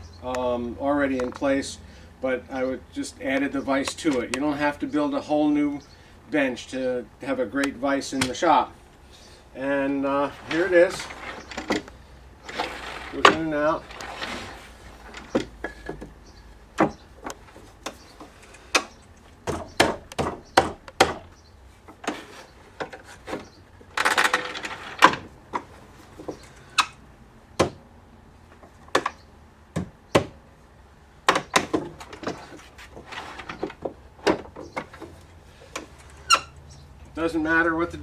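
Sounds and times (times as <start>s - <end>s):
wooden vise jaw knocks: 27.6s - 27.8s.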